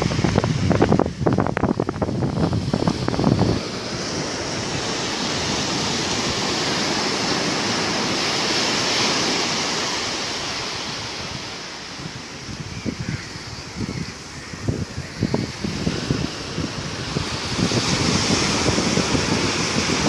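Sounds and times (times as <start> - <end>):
sea waves washing ashore: 0.0 - 20.0
wind rumbling on microphone: 0.0 - 20.0.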